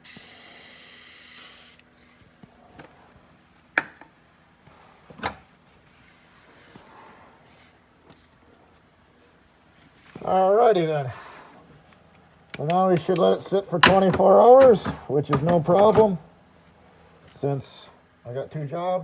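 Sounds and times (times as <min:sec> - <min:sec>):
sharp knocks: 0:13.8 - 0:16.2.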